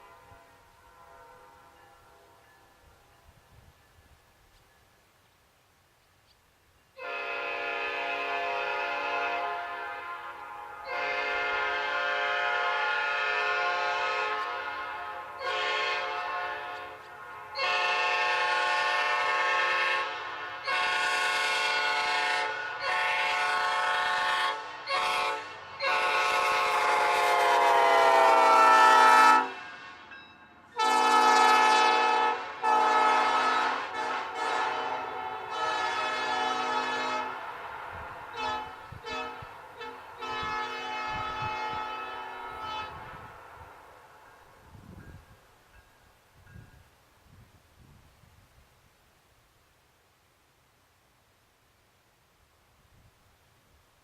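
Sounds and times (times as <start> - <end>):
locomotive air horn blasts: 0.0 - 2.5, 7.0 - 43.8.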